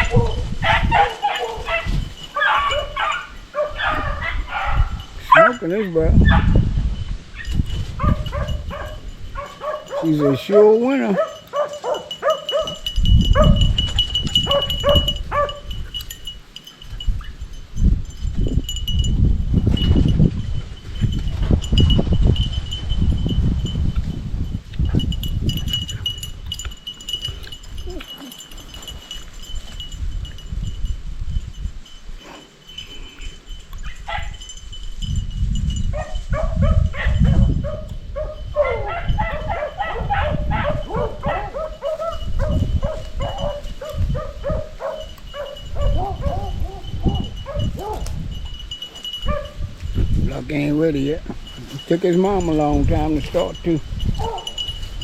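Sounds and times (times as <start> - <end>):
hounds baying: 0.0 - 6.6, 7.4 - 16.2, 33.2 - 34.6, 35.9 - 49.8, 54.1 - 54.8.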